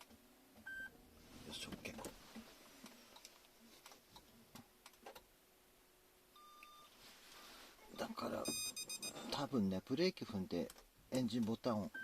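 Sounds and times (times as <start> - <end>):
short electronic beep: 8.4 - 9.4.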